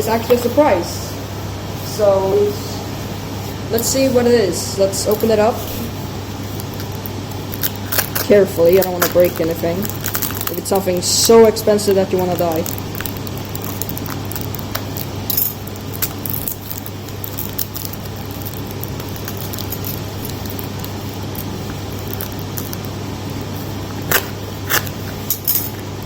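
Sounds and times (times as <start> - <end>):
steady low hum: 0.0 - 26.0
packaging rustling and clicking: 6.5 - 11.0, 12.3 - 26.0.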